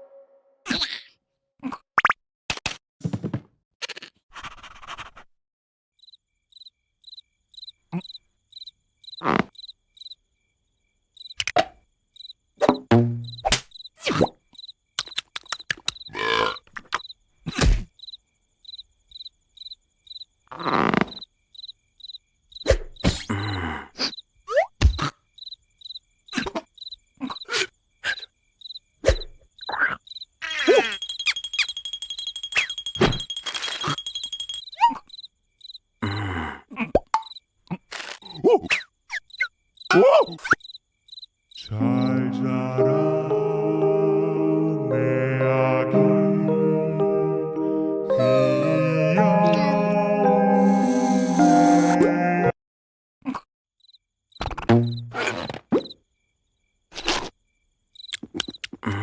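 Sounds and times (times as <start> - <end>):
sustained tone: 0.0 - 0.6
cartoon pops and swishes: 2.0 - 2.8, 12.6 - 14.3
cricket chirping: 6.0 - 42.3, 53.8 - 59.0
music: 41.7 - 52.5.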